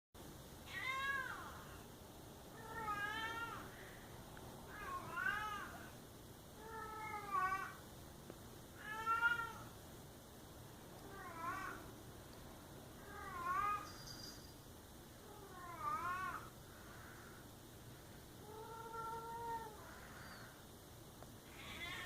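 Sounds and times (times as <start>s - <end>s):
cat meowing: 21.5s - 22.0s.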